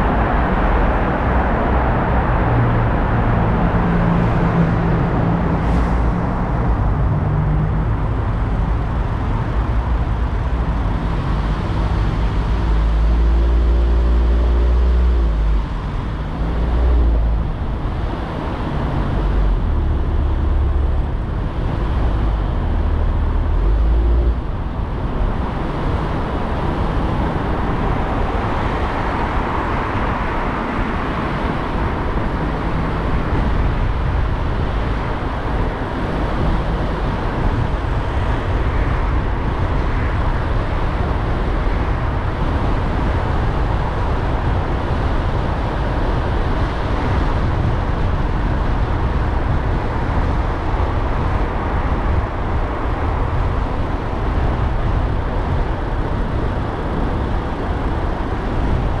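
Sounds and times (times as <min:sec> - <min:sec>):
car engine hum: 0:00.0 - 0:59.0
tyre and road noise: 0:00.0 - 0:59.0.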